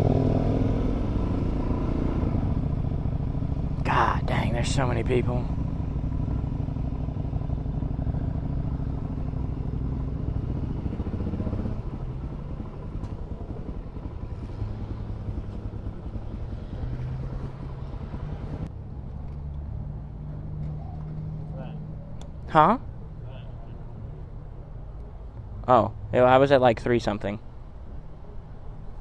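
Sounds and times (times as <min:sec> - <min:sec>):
motorcycle engine running: 0:00.0 - 0:18.7.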